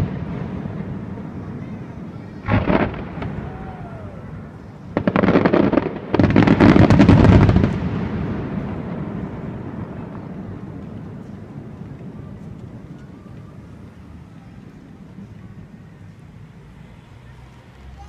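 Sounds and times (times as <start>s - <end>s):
firework bang: 0.0s - 13.8s
fireworks crackling: 0.0s - 18.0s
fireworks rumble: 0.0s - 18.0s.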